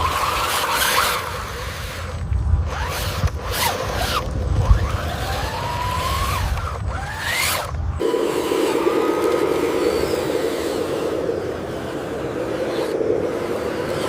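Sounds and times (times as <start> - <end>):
rasping bursts: 0.0 - 14.0
small electric motors whining: 0.0 - 14.0
low hum: 4.2 - 14.0.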